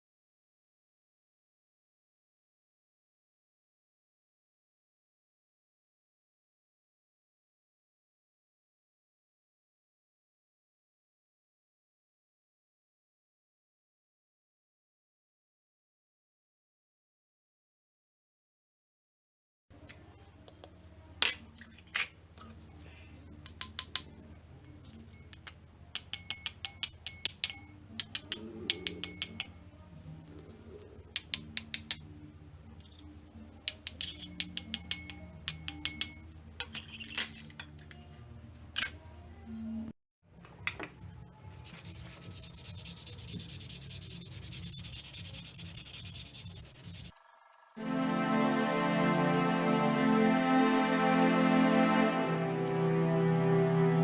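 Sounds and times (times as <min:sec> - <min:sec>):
sanding on metal: 0:41.6 - 0:47.1
soft background music: 0:47.8 - 0:54.0.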